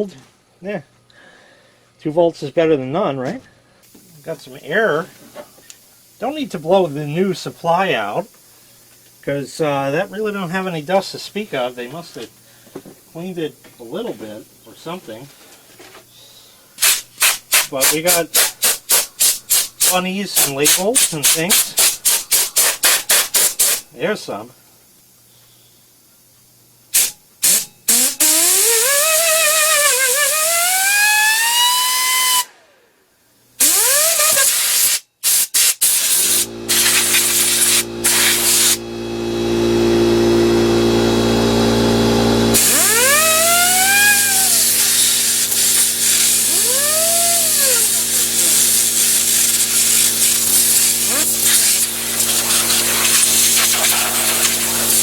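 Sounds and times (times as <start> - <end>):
compressed air hissing: 3.8 - 6.6, 16.1 - 24.0, 26.9 - 32.5, 33.6 - 41.7, 42.4 - 55.0.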